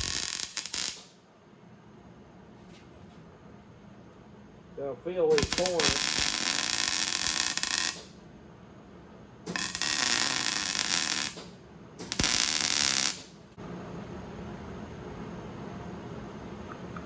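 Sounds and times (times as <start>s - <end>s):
arc welding crackling: 0.0s - 1.2s, 5.3s - 8.2s, 9.5s - 13.4s.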